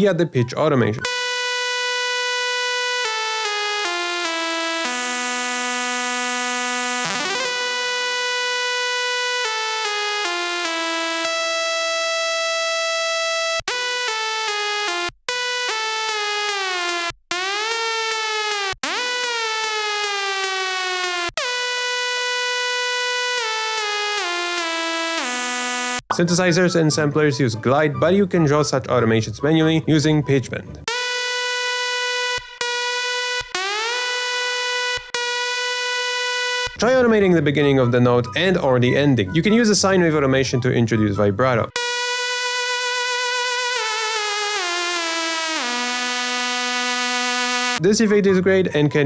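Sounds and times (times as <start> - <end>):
buzzy synth lead gliding: 1.0 - 12.4, 13.7 - 26.2, 41.8 - 47.8.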